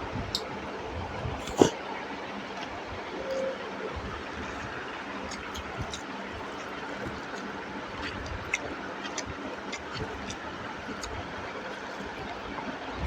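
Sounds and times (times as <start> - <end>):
steady background hum: 0.0 - 13.0
chewing and mouth smacks: 4.3 - 12.8.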